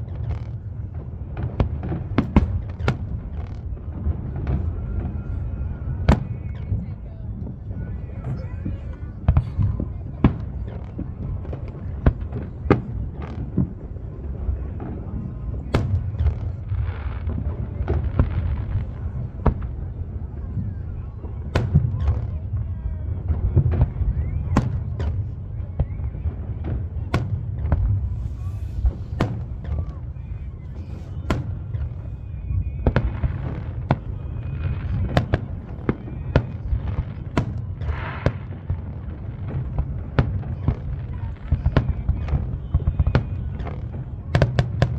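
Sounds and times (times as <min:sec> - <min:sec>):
continuous low rumble: 0:00.0 - 0:44.9
fireworks bangs: 0:00.0 - 0:44.9
fireworks crackling hiss: 0:26.3 - 0:44.9.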